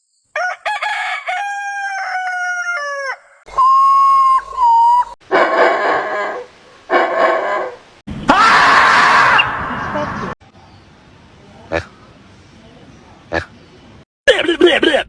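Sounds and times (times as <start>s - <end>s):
rooster crowing: 0.3s - 3.5s.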